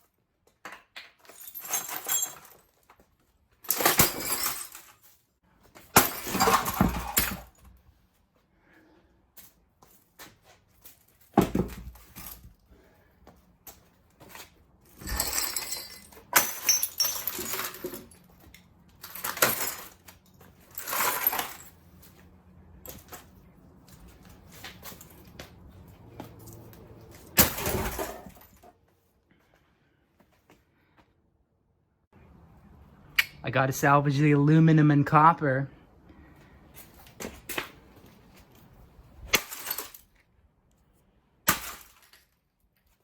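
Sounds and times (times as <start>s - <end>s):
glass crashing: 3.7s - 4.9s, 5.9s - 7.6s, 15.0s - 18.2s, 27.4s - 28.6s, 41.5s - 42.2s
broken glass crunching: 3.7s - 5.0s, 5.9s - 7.6s, 15.0s - 18.2s, 27.3s - 28.6s, 39.3s - 40.1s, 41.5s - 42.4s.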